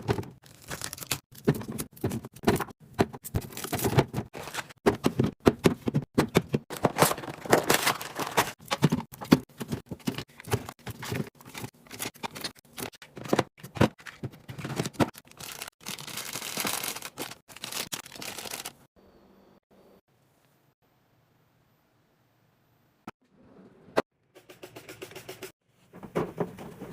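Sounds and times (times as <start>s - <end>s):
snack packaging crinkling: 0.4s - 1.2s, 6.7s - 8.6s, 15.2s - 18.8s.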